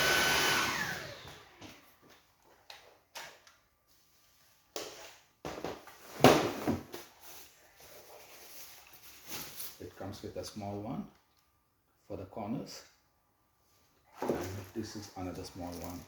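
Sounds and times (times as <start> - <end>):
vacuum motor spinning down: 0.0 - 1.8.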